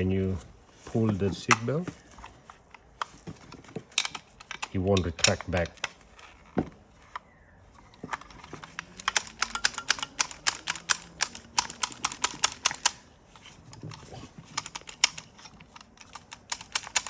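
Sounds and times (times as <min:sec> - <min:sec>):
seatbelt retractor clicking: 0:08.2 - 0:17.0.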